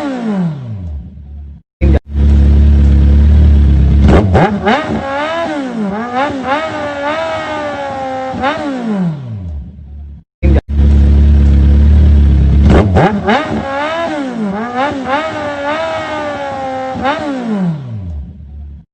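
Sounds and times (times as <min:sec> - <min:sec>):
motorcycle engine revving: 0:00.0 - 0:18.8
very loud low rumble: 0:01.1 - 0:04.4, 0:09.8 - 0:13.3.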